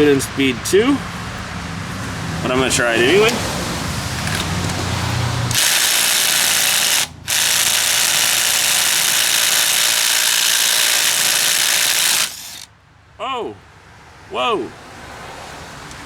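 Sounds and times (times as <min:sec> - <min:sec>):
impact wrench hammering: 0:05.5 - 0:12.7.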